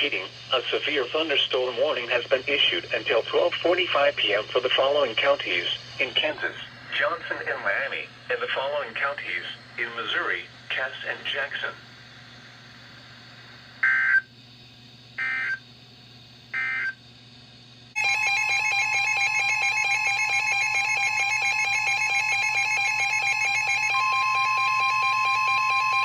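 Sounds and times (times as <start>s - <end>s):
two-tone alarm: 13.8s - 14.3s, 15.2s - 15.6s, 16.5s - 17.0s, 18.0s - 26.0s
digital data bursts: 18.0s - 26.0s.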